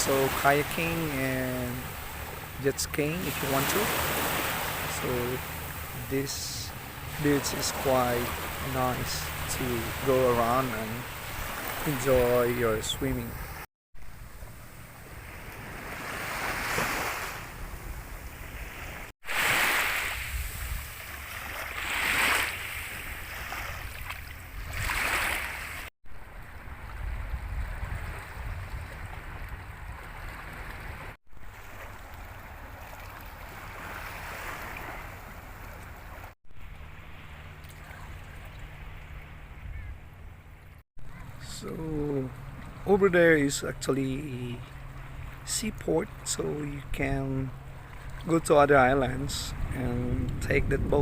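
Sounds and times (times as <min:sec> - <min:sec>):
sea waves washing onto beach: 0:00.0 - 0:13.6, 0:14.5 - 0:27.0
wind buffeting microphone: 0:26.6 - 0:31.1, 0:49.5 - 0:51.0.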